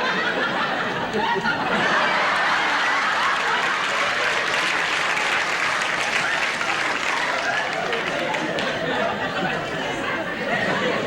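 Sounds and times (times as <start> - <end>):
audience laughing: 0.0 - 11.0
audience applauding: 1.2 - 9.0.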